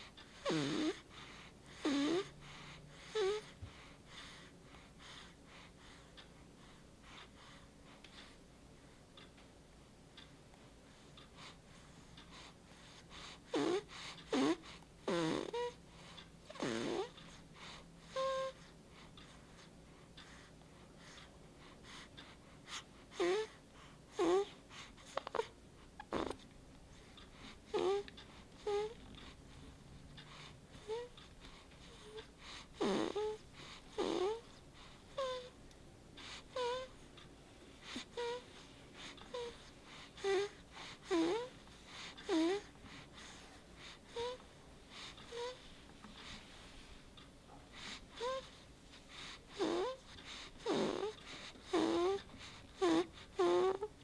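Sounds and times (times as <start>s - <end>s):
baby snoring: 0.0s - 3.6s, 12.4s - 18.7s, 22.7s - 26.4s, 27.3s - 29.4s, 30.2s - 35.6s, 36.2s - 37.0s, 37.8s - 45.6s, 47.6s - 54.0s
baby soft breaths: 0.0s - 9.0s, 10.5s - 54.0s.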